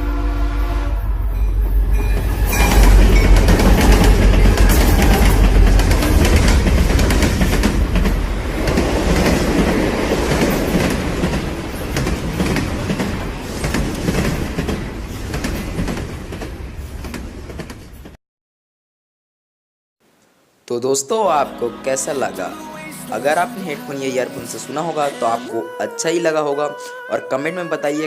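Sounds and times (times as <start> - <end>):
loud rumbling rattling noise: 0.9 - 16.7.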